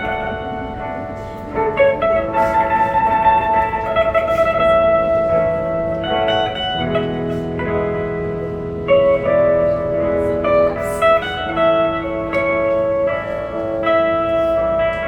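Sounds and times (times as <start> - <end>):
electric guitar chords: 0.0 - 15.0.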